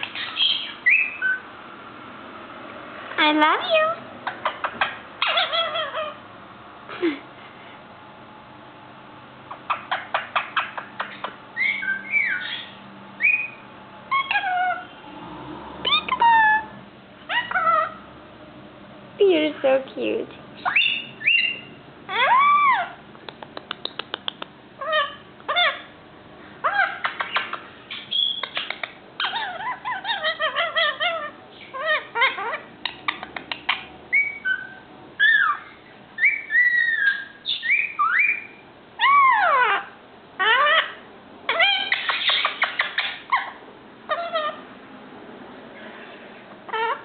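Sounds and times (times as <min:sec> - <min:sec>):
parakeet whistles and squawks: 0:00.0 - 0:01.5, 0:03.2 - 0:06.2, 0:09.5 - 0:18.1, 0:20.6 - 0:23.0, 0:24.8 - 0:26.0, 0:26.6 - 0:44.6, 0:45.8 - 0:47.0.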